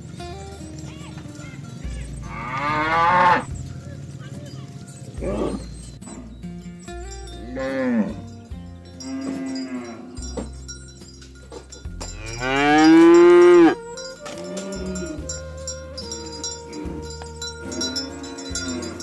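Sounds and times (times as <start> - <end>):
cattle mooing: 0.0 - 3.6, 4.5 - 6.3, 7.5 - 8.4, 9.0 - 10.6, 12.1 - 19.0
cowbells clinking: 0.0 - 19.0.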